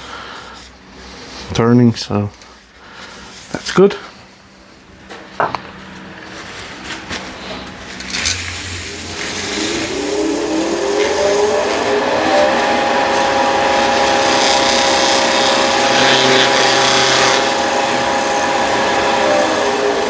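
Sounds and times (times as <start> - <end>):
wood lathe motor whine: 8.0 - 20.0
lathe knocks: 11.8 - 20.0.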